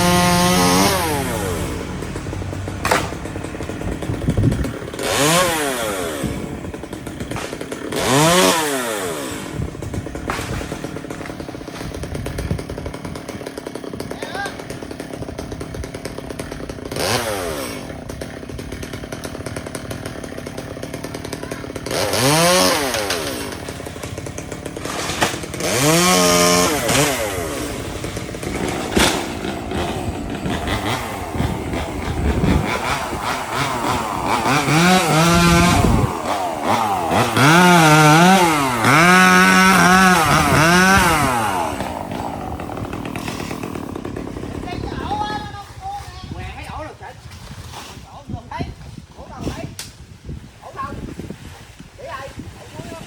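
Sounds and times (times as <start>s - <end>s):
chainsaw revving: 0.0s - 46.8s.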